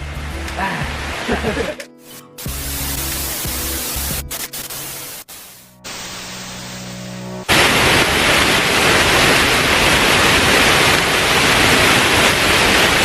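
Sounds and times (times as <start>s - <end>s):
waterfall rushing: 0.0s - 1.8s, 7.5s - 13.0s
background music: 0.0s - 7.5s.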